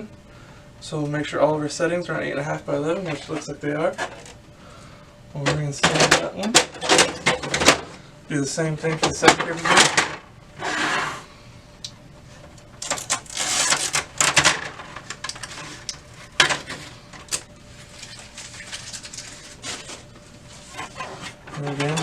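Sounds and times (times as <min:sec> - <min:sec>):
rustling and scraping: 0:03.0 - 0:04.4, 0:09.0 - 0:11.3, 0:12.3 - 0:22.0.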